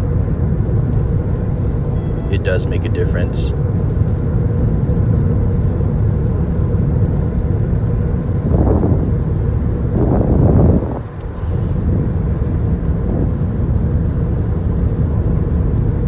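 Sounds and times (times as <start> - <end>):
car tyre noise on wet road: 0.0 - 16.0.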